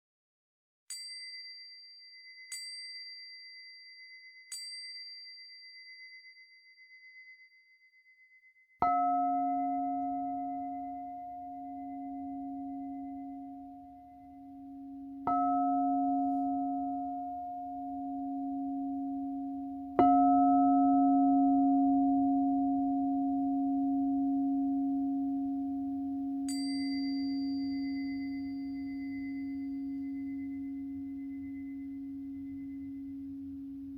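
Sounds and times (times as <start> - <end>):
high-pitched chime: 0.9 - 11.0, 26.5 - 33.2
singing bowl ringing: 0.9 - 33.9.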